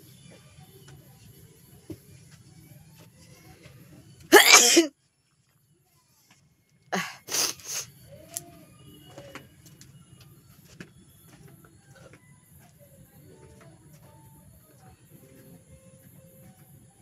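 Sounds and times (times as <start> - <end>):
person sneezing: 4.3 - 4.9, 7.0 - 7.9.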